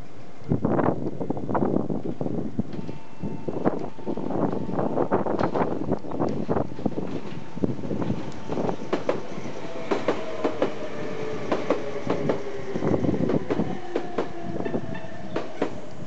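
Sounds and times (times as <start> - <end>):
train rumble: 0.0 - 16.0
train wheels clacking over joints: 6.3 - 15.9.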